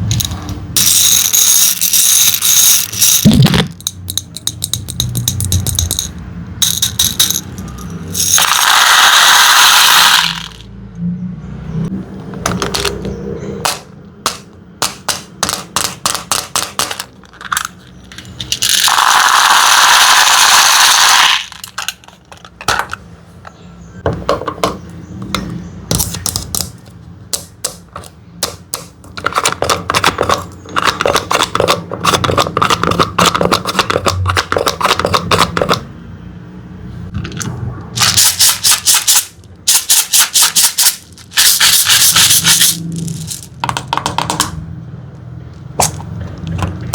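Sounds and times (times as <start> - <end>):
hard candies clattering into container: 0.1 - 10.6, 15.5 - 22.9, 38.0 - 44.5
single candies dropping and rattling: 0.1 - 10.6, 15.4 - 22.9, 38.0 - 44.6.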